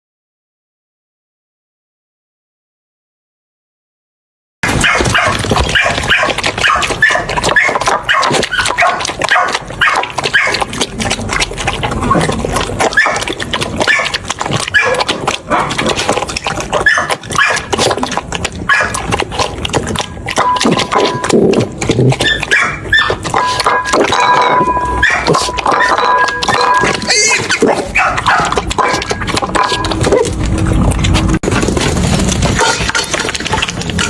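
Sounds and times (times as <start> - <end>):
puppy yapping and whining: 4.7 - 10.7, 12.1 - 15.9, 16.7 - 18.0, 18.7 - 19.1, 22.0 - 30.5.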